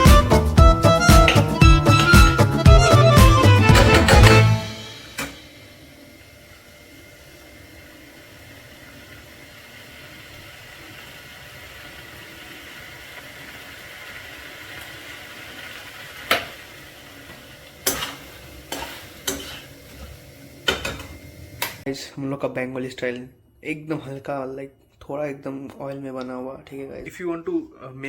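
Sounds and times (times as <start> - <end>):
utensil striking pan: 1.2 - 3.0, 3.6 - 5.5, 16.3 - 16.6, 17.3 - 21.8
chicken sizzling in a pan: 4.6 - 21.9.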